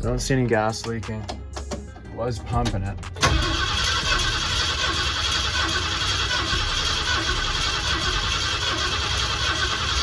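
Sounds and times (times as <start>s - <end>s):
engine cranking without starting: 3.2s - 10.0s.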